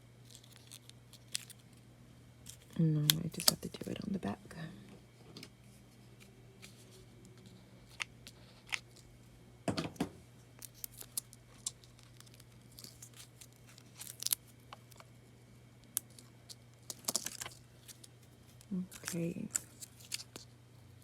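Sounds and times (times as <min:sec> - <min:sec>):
low steady hum: 0:00.0 - 0:21.0
paper crafting clicks and rustles: 0:16.0 - 0:18.1, 0:18.9 - 0:20.5.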